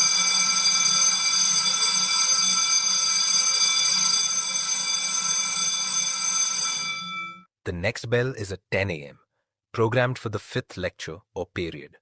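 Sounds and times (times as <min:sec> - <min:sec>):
electric school bell ringing: 0:00.0 - 0:07.5.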